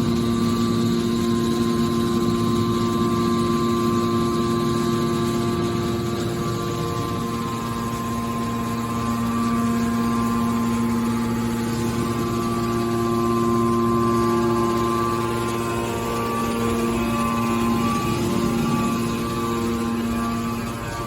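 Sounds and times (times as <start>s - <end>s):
baler machine hum: 0.0s - 21.0s.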